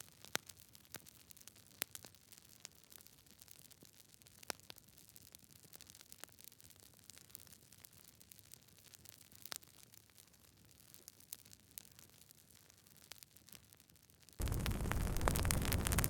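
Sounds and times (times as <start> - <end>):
faint steady hiss: 14.4 - 16.0
wood fire crackling: 14.4 - 16.0.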